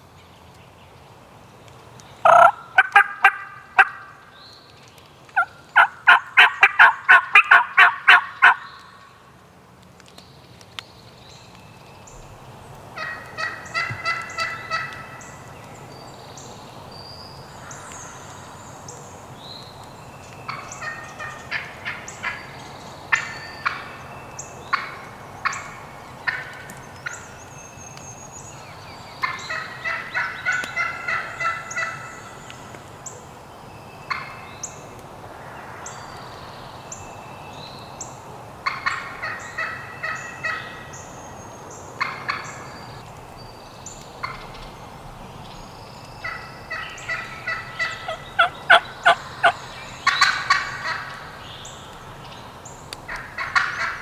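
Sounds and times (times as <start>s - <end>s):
songbirds chirping: 0.0s - 54.0s
turkey gobbling: 2.2s - 4.2s, 5.4s - 9.0s, 13.0s - 15.2s, 20.5s - 22.4s, 23.1s - 24.0s, 24.7s - 27.3s, 29.2s - 32.2s, 38.6s - 40.8s, 42.0s - 42.7s, 46.2s - 51.4s, 53.1s - 54.0s.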